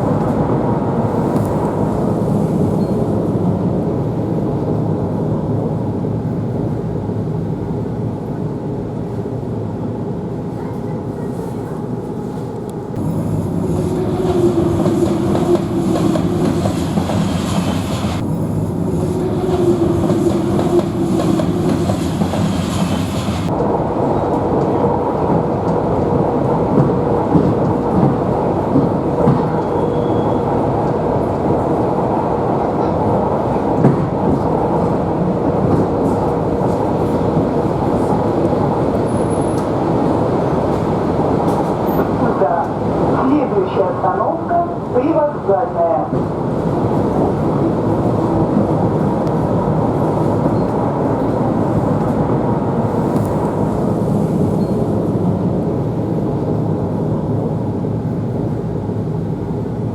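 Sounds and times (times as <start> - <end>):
train rumble inside carriage: 0.0 - 59.9
train wheel clatter: 13.0 - 18.3, 19.4 - 24.8.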